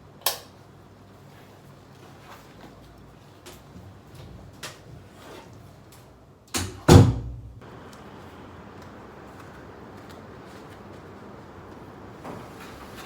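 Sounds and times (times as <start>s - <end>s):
door banging shut: 6.6s - 7.5s.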